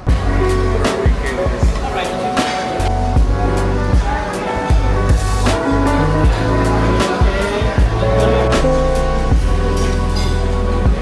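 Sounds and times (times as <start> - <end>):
kick drum: 0.0 - 0.4, 3.2 - 8.2, 9.3 - 9.7
deep bass notes: 0.0 - 2.1, 2.8 - 11.0.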